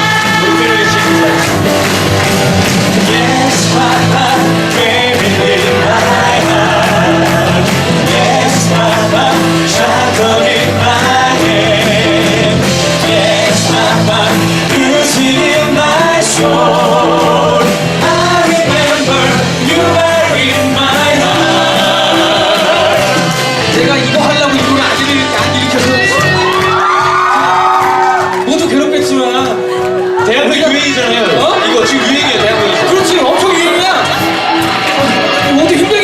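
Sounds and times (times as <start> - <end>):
voices singing with vibrato: 0.0 - 28.3
instrumental accompaniment: 0.0 - 36.0.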